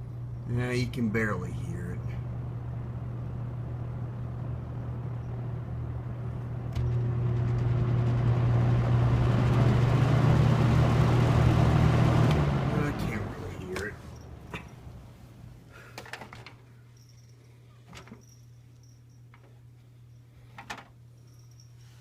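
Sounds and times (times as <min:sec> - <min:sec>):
box fan humming: 0:00.0 - 0:22.0.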